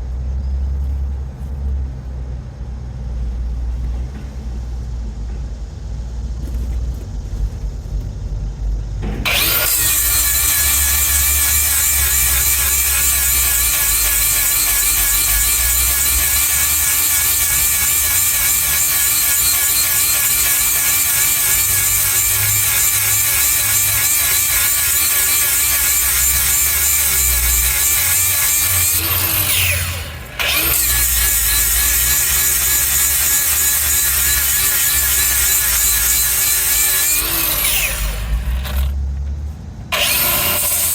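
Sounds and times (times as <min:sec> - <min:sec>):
power grinder sharpening steel: 0:09.3 - 0:39.0, 0:39.9 - 0:40.9.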